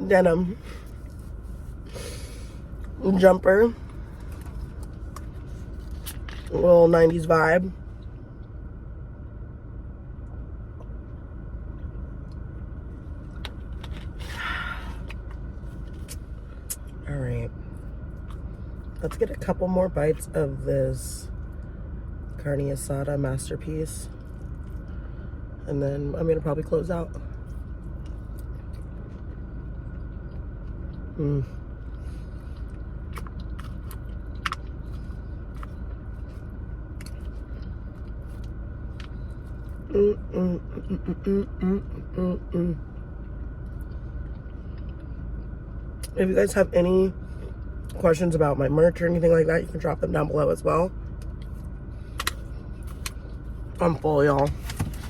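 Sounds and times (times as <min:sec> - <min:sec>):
car interior rumble: 0:00.0 - 0:55.0
person chewing: 0:03.8 - 0:06.5, 0:28.0 - 0:36.4, 0:37.0 - 0:42.6.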